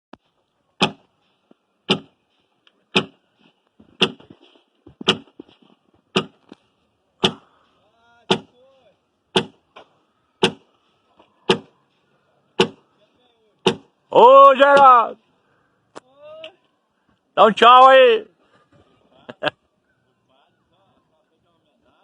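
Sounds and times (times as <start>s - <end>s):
axe chopping wood: 0.8s - 1.1s, 1.9s - 2.2s, 2.9s - 3.2s, 4.0s - 4.4s, 5.0s - 5.4s, 6.1s - 6.4s, 7.2s - 7.4s, 8.3s - 8.5s, 9.3s - 10.7s, 11.5s - 11.7s, 12.6s - 12.8s, 13.6s - 13.9s.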